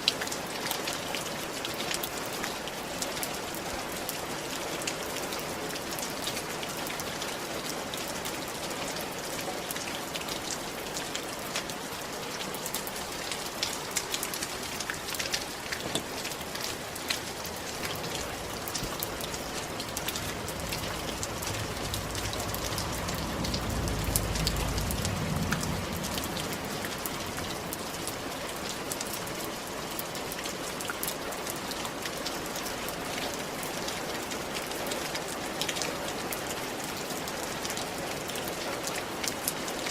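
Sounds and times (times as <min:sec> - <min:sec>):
rain on hard surfaces: 0:00.0 - 0:39.9
low rumble: 0:20.0 - 0:27.6.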